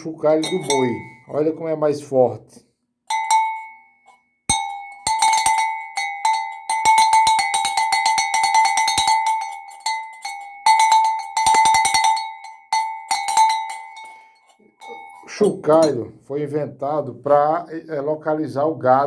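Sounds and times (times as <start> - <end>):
ox bell clanking: 0.0 - 1.4, 3.1 - 16.1.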